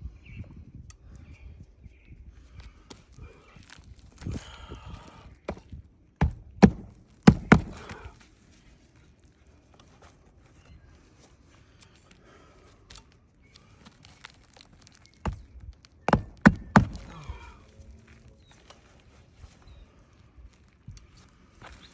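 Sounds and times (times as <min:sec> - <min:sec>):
shingle rustling: 0:05.3 - 0:21.9
hammer knocks: 0:06.2 - 0:08.0, 0:16.1 - 0:17.1.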